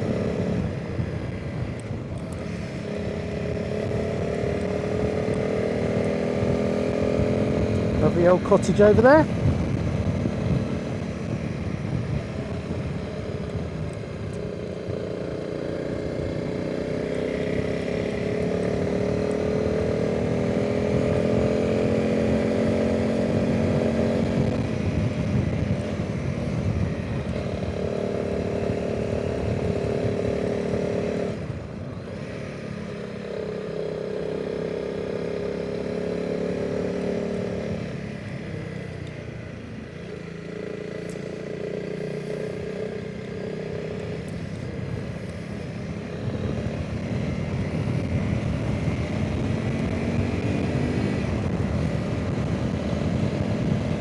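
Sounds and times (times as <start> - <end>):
wind noise: 0.0 - 16.6, 17.6 - 32.4, 43.9 - 54.0
motorcycle engine running: 0.0 - 54.0.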